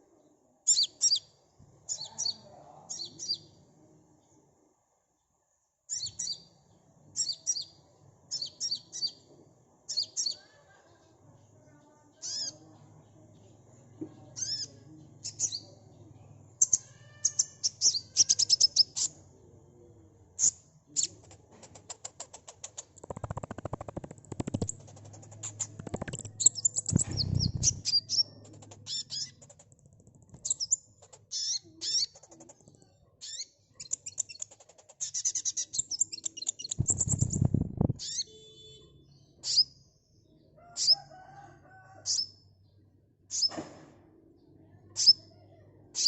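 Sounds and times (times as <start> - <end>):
bird chattering trills: 20.4 - 32.6
low fluttering thumps: 22.8 - 28.0, 36.8 - 38.0.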